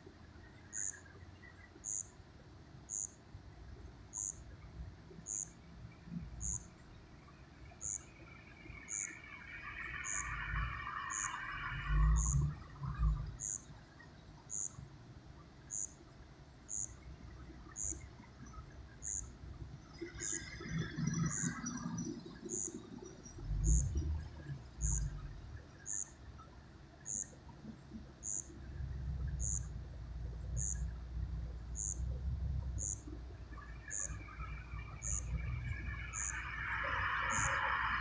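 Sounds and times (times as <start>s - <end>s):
low rumbling: 28.5s - 38.0s.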